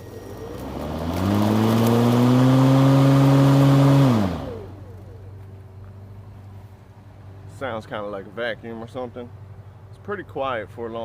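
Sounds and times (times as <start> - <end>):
electric lawn mower whirring: 0.0 - 6.6.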